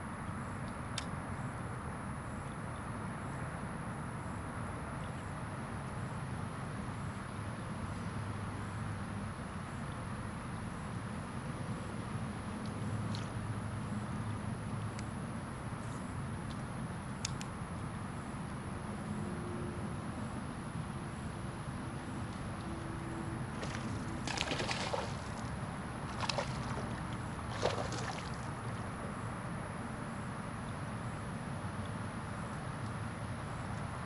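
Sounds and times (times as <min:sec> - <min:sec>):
water splashing: 0:23.5 - 0:28.9.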